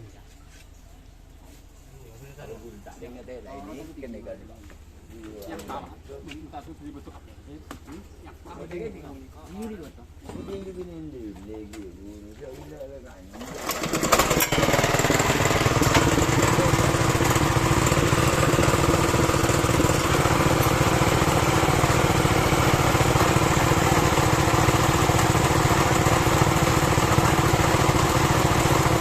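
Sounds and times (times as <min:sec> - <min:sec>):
water pump engine running: 0:13.3 - 0:29.0.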